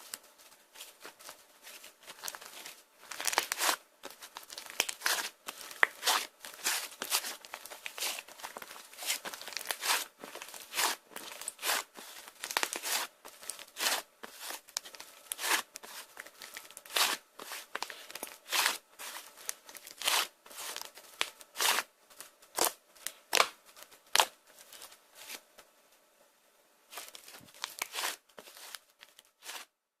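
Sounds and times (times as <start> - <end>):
slime crackling and popping: 3.1 - 18.8.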